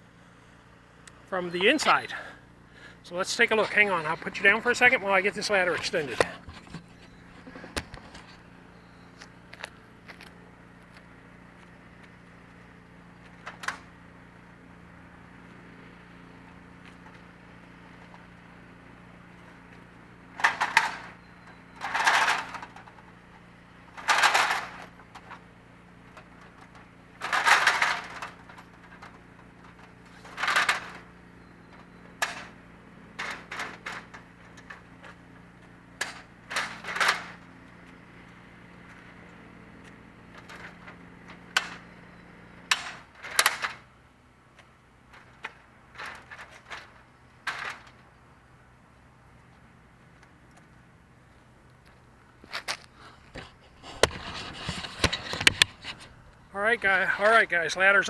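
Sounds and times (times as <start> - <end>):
ladder sliding scrapes with clanks: 3.1 - 8.5, 20.4 - 23.1, 23.9 - 31.1, 31.7 - 35.4, 36.0 - 37.4, 53.0 - 56.2
ladder knocks and clacks: 26.4 - 31.0.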